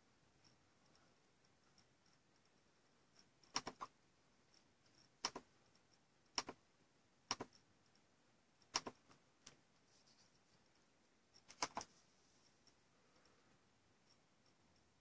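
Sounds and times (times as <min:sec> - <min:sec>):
computer mouse clicks: 0:03.4 - 0:03.9, 0:05.0 - 0:05.5, 0:06.3 - 0:06.6, 0:07.3 - 0:07.6, 0:08.6 - 0:09.6, 0:11.4 - 0:12.0.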